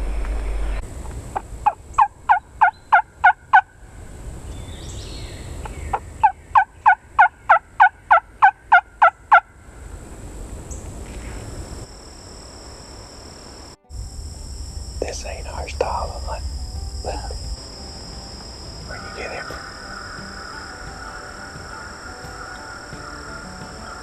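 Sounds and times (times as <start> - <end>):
turkey call yelps: 1.6 - 3.7, 6.2 - 9.5.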